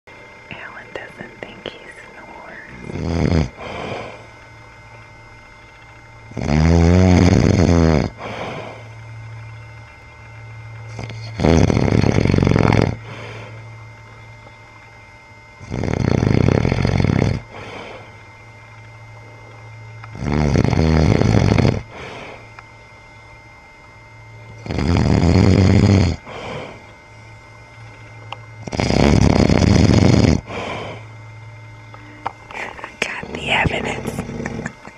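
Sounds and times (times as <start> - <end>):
steady low hum: 0.0 - 34.9
man snoring: 2.3 - 4.3, 6.3 - 8.9, 10.9 - 13.6, 15.6 - 18.2, 20.1 - 22.5, 24.6 - 26.9, 28.6 - 31.1, 32.6 - 34.8.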